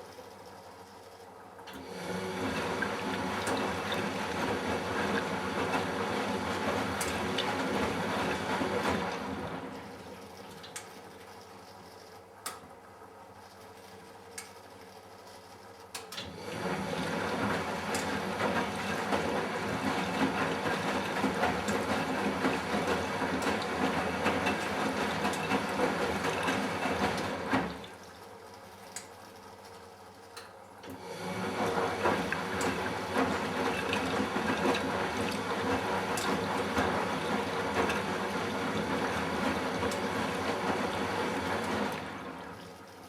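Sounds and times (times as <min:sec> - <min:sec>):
washing machine drum tumbling: 0:16.6 - 0:28.0, 0:31.3 - 0:42.6.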